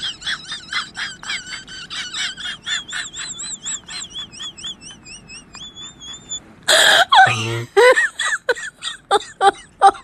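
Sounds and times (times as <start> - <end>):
high-pitched animal chirping: 2.9 - 6.4.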